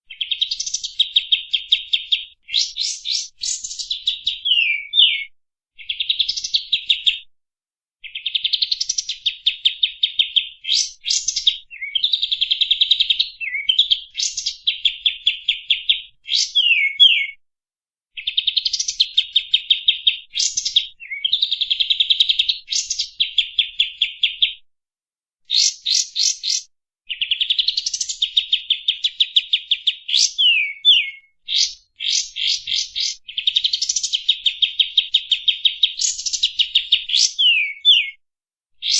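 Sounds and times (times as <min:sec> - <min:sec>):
songbird trilling: 0:01.6 - 0:06.6, 0:13.0 - 0:14.6, 0:15.4 - 0:17.4, 0:25.5 - 0:28.2, 0:30.0 - 0:38.2.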